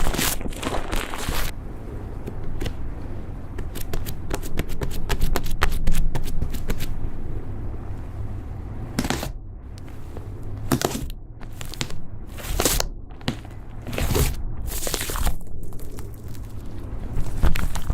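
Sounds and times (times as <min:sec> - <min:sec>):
slime crackling and popping: 0:00.0 - 0:01.5, 0:10.7 - 0:17.9.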